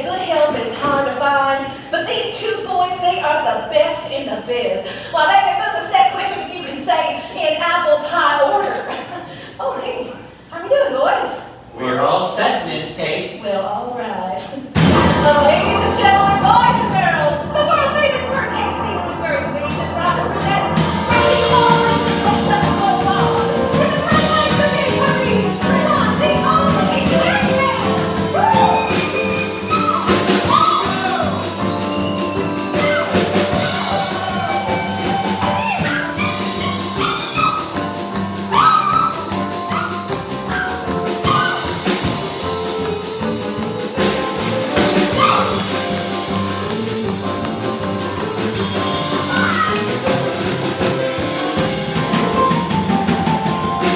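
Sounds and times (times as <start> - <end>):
stage music with drum beat: 14.7 - 53.9.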